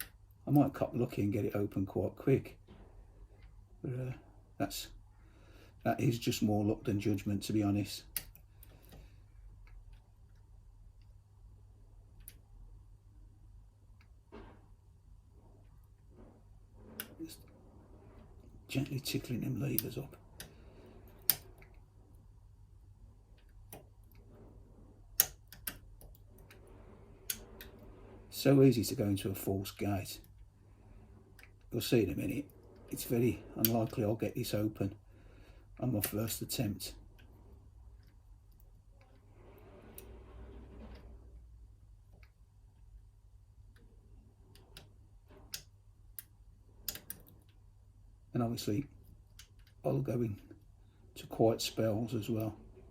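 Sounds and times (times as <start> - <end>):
soft rustle: 25.8 - 45.6.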